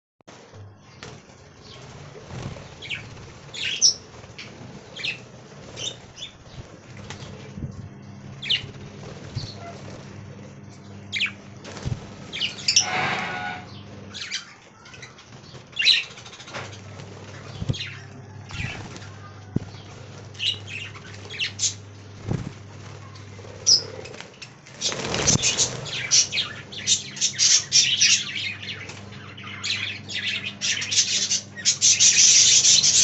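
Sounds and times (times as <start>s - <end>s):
noisy rustle: 0.3s - 10.4s, 11.5s - 14.2s, 15.0s - 27.0s
budgies chirping: 0.9s - 7.5s, 8.3s - 10.0s, 10.9s - 11.5s, 12.2s - 21.9s, 23.0s - 33.0s.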